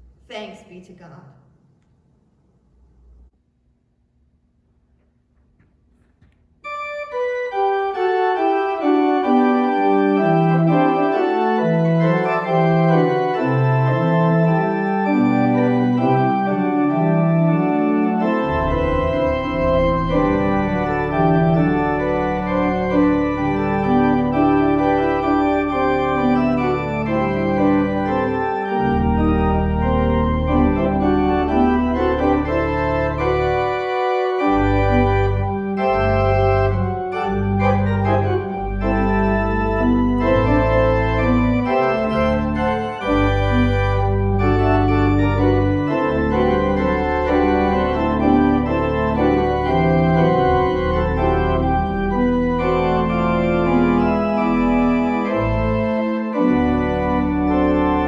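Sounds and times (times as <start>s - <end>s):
church organ chords: 6.6s - 58.0s.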